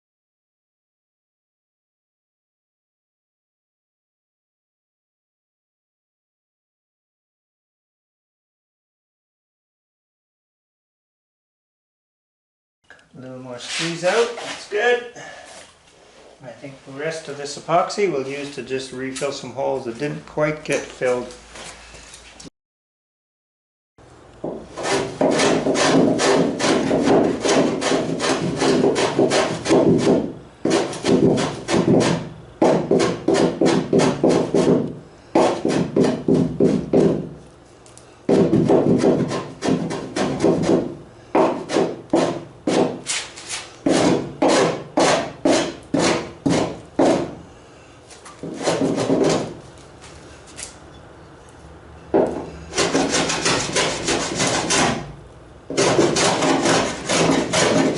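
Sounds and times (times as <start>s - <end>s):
hand tool rasping wood: 24.4s - 37.3s, 38.3s - 47.4s, 48.2s - 49.6s, 52.1s - 55.1s, 55.7s - 57.9s.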